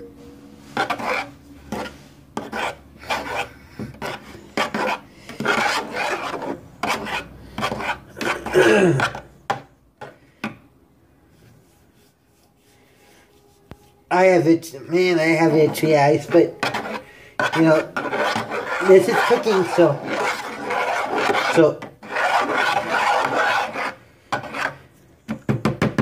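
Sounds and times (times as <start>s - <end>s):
rasping rubbing scrapes: 0.6s - 9.3s, 15.0s - 25.0s.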